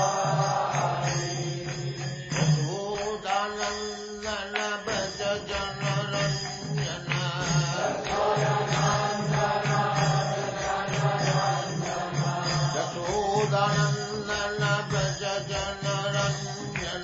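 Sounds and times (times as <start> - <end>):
devotional chant singing: 0.0 - 17.0
steady pulsing beat: 5.5 - 17.0.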